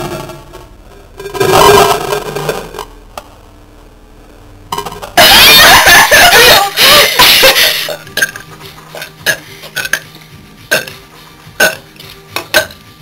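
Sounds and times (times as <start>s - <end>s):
girl burping: 10.7s - 10.9s.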